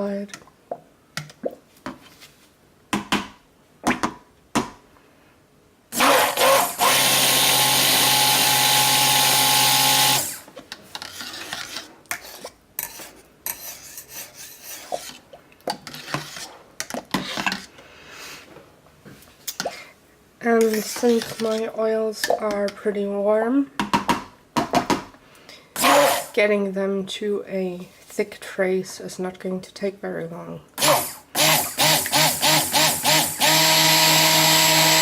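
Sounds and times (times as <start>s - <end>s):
stick blender running: 5.9s - 10.5s, 25.8s - 26.4s, 30.8s - 35.0s
utensil knocking and scraping pot: 10.9s - 17.7s, 20.6s - 22.8s.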